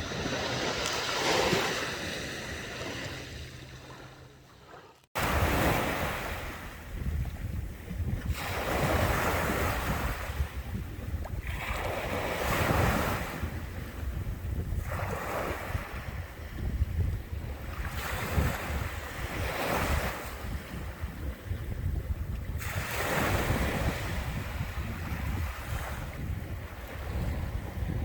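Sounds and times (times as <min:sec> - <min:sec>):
wind rumbling on microphone: 0:00.0 - 0:04.4, 0:05.2 - 0:28.0
sea waves washing: 0:00.0 - 0:14.1.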